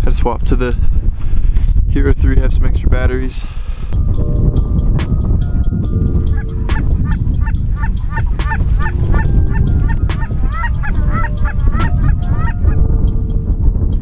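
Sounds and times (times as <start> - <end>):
steady low rumble: 3.9 - 14.0
geese honking: 6.1 - 12.8.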